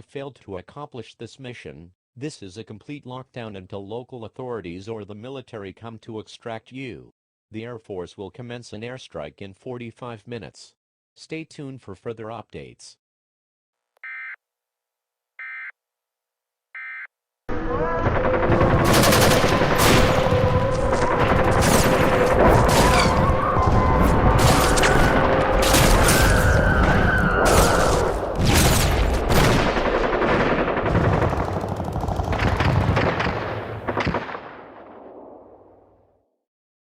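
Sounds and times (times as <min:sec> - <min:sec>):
short electronic beeps: 0:14.0 - 0:14.4, 0:15.4 - 0:15.7, 0:16.8 - 0:17.1
gunfire and blasts: 0:18.0 - 0:35.8.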